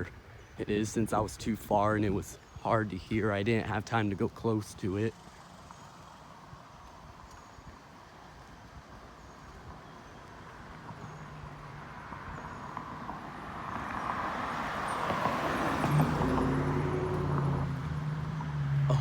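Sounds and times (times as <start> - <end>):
low engine hum: 9.7 - 19.0
car road noise passing: 10.4 - 19.0.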